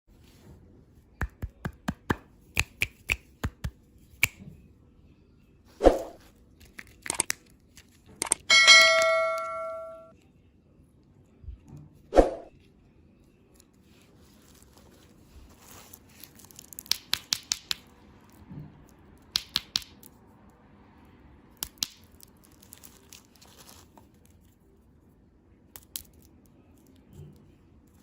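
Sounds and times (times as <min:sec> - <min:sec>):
candy wrapper crinkling: 0:06.3 - 0:08.1, 0:14.2 - 0:17.8, 0:21.7 - 0:24.5
sharp clicks and snaps: 0:06.6 - 0:08.5, 0:16.8 - 0:17.9, 0:19.2 - 0:20.2, 0:21.6 - 0:22.3.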